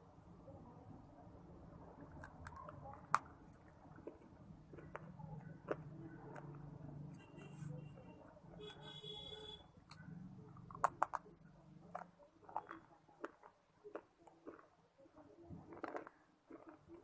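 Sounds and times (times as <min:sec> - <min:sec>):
chewing crunchy stone: 0:02.1 - 0:06.8, 0:10.6 - 0:17.0.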